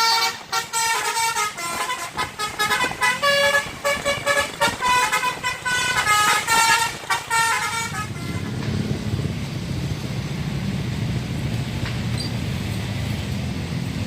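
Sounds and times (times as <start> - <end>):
bus horn playing melody: 0.0 - 9.0
bus engine running: 0.0 - 14.0.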